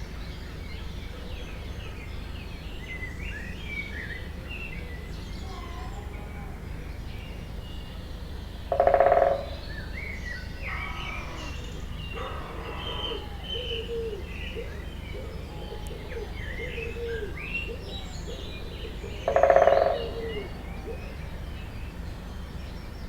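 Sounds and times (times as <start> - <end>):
birds singing and chirping: 0.0 - 23.0
loud low bird call: 10.6 - 21.2.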